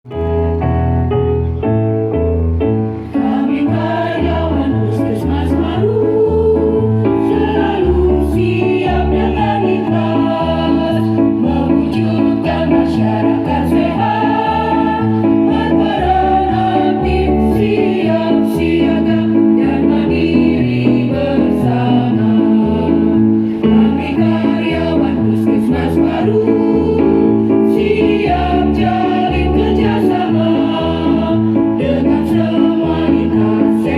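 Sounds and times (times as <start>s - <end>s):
instrumental accompaniment: 0.1s - 33.9s
choir singing: 3.1s - 33.9s.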